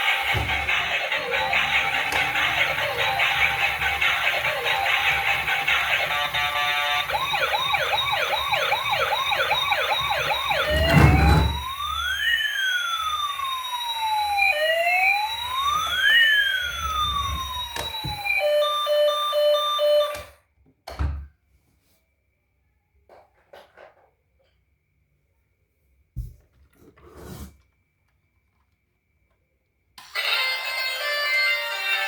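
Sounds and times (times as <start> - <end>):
electronic toy siren: 0.0 - 20.4.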